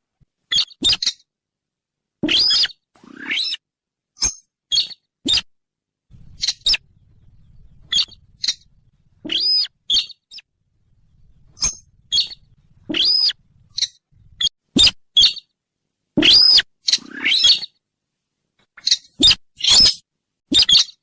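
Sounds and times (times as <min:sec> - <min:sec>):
bird call with sharp high chips: 0:09.3 - 0:10.4, 0:11.6 - 0:15.5, 0:16.2 - 0:17.8, 0:18.8 - 0:21.0.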